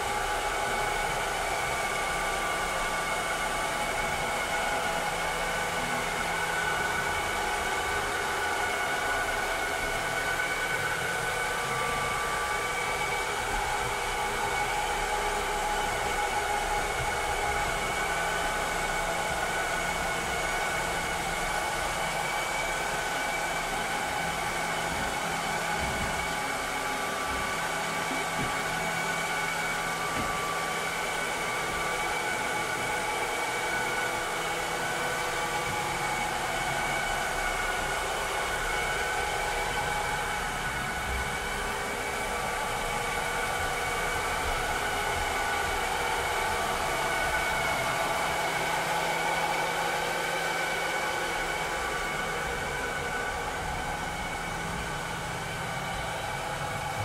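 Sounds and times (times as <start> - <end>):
robotic vacuum cleaner running: 0.0 - 57.0.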